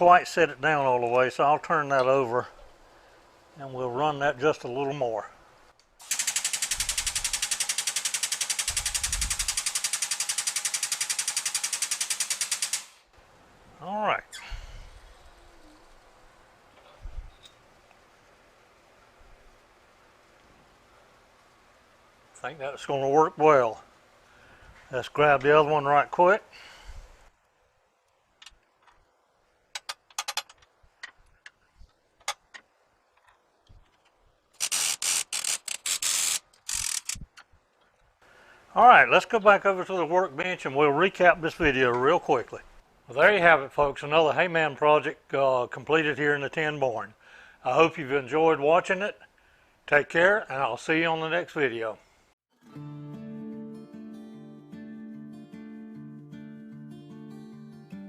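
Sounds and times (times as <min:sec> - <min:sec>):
shop press pulsing rapidly: 0:06.0 - 0:13.0
loud hissing bursts: 0:06.0 - 0:13.2, 0:34.6 - 0:37.3.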